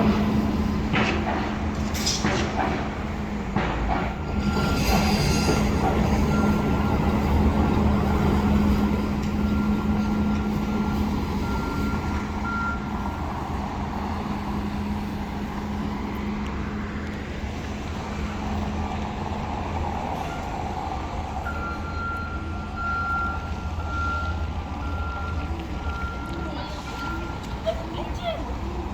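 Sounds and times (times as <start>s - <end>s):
low engine rumble: 0.0s - 28.9s
reversing beeper: 4.2s - 13.2s, 21.4s - 27.5s.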